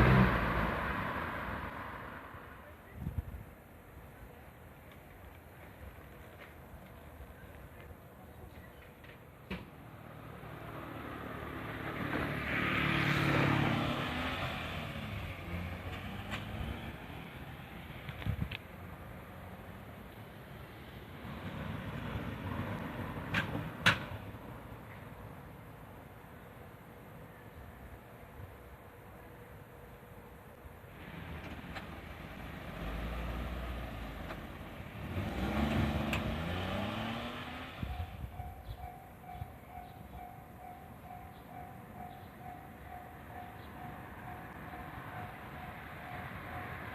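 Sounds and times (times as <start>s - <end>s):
vehicle driving past: 0.0s - 2.6s, 10.0s - 17.8s, 32.2s - 38.0s
vehicle engine driving past: 34.9s - 38.0s.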